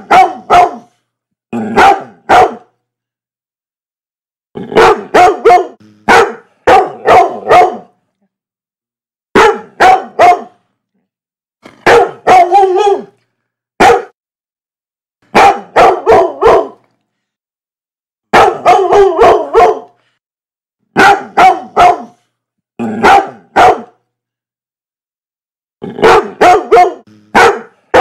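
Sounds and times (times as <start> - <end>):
dog barking loudly: 0.0 - 1.0, 1.8 - 2.7, 4.7 - 8.0, 9.3 - 10.6, 11.8 - 13.1, 13.8 - 14.2, 15.3 - 16.8, 18.3 - 20.0, 20.9 - 22.2, 23.0 - 24.0, 26.0 - 28.0.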